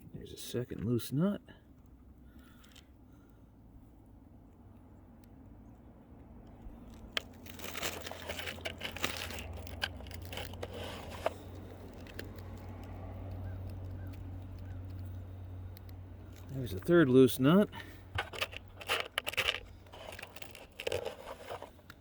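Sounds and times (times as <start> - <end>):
hardware rummaged through by hand: 6.8 - 12.7, 16.2 - 22.0.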